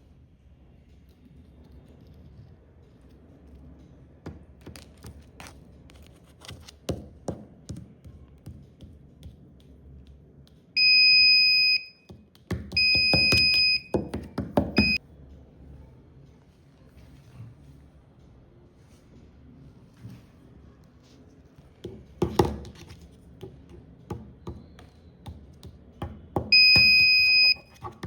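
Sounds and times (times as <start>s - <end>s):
high-pitched buzzer tone: 14.8s - 15.0s.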